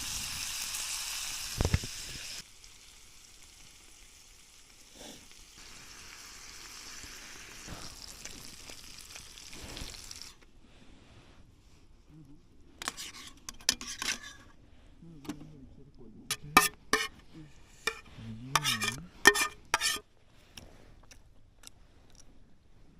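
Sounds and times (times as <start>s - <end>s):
metal utensils clinking on cookware: 16.3s - 20.0s.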